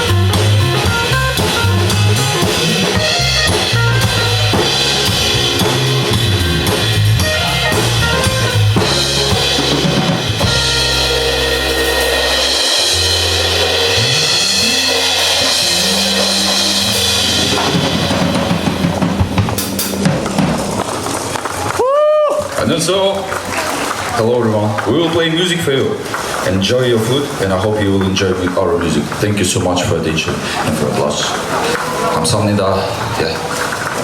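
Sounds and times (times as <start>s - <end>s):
sliding bass note: 0.0s - 20.8s
pop band playing: 0.0s - 22.6s.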